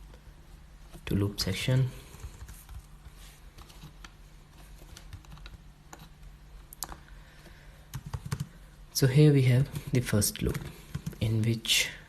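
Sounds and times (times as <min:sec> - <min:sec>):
low steady hum: 0:00.0 - 0:12.0
computer keyboard clicks: 0:04.9 - 0:06.1, 0:07.9 - 0:08.5, 0:10.4 - 0:11.2.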